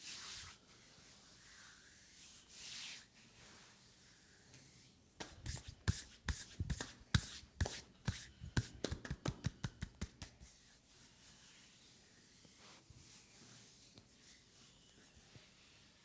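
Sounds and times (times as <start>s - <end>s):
hands patting and slapping a leg: 5.2s - 10.5s.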